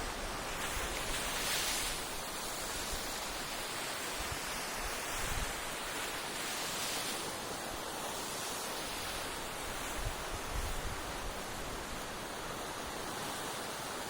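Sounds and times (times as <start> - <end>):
sea waves washing onto beach: 0.0 - 14.0
wind gusting on microphone: 9.0 - 12.2.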